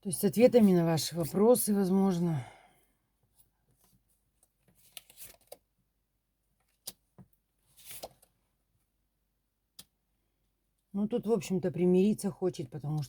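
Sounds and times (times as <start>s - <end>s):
cards rustling: 4.7s - 5.6s, 7.7s - 8.3s.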